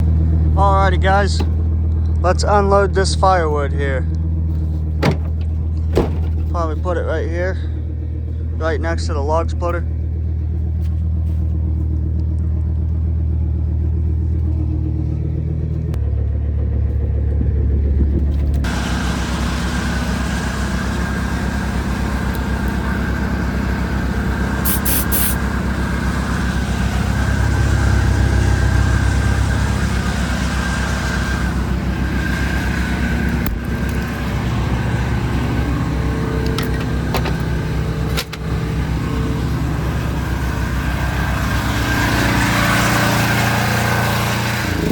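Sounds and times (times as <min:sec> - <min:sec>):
engine running under load: 0:00.0 - 0:44.9
rushing mechanical noise: 0:17.4 - 0:44.9.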